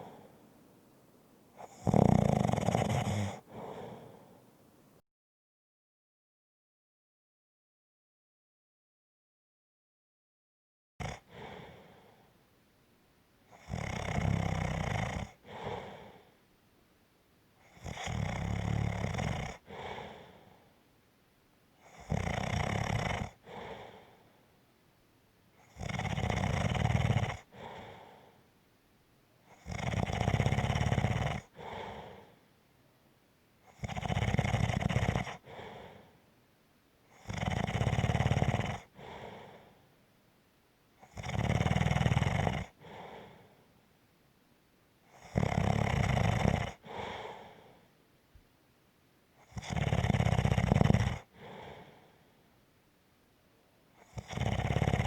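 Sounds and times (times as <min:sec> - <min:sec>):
person snoring: 0:01.6 - 0:04.4, 0:13.5 - 0:16.3, 0:17.7 - 0:20.5, 0:21.8 - 0:24.2, 0:25.6 - 0:28.3, 0:29.5 - 0:32.4, 0:33.7 - 0:36.1, 0:37.2 - 0:39.7, 0:41.0 - 0:43.5, 0:45.2 - 0:47.7, 0:49.4 - 0:52.0, 0:54.0 - 0:55.0.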